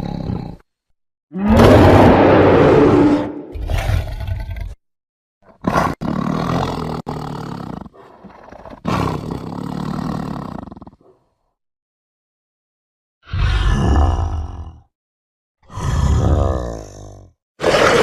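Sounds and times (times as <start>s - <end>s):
dinosaur roars: 1.3s - 4.8s, 13.2s - 14.9s, 15.6s - 18.0s
growling roars: 1.3s - 4.8s, 13.2s - 14.9s, 15.6s - 18.0s.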